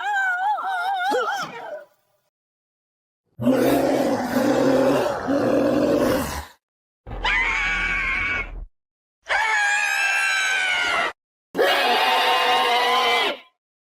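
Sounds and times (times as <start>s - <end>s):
creature screeching cries: 0.0s - 1.9s, 7.2s - 8.5s, 9.3s - 13.3s
creature growling: 3.4s - 6.6s.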